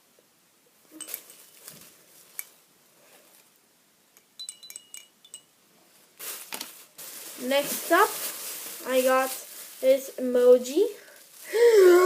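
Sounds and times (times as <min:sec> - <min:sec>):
ringing clinks: 0:04.4 - 0:05.5.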